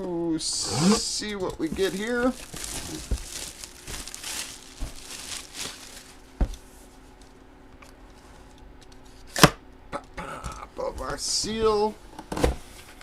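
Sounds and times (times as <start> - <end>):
plastic wrap crinkling: 1.2 - 7.4.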